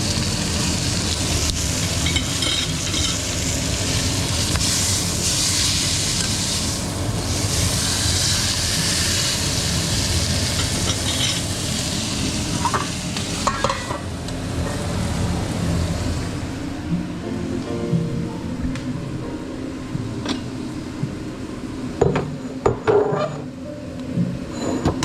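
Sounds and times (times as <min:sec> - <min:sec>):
steak sizzling in a pan: 0:00.0 - 0:13.6.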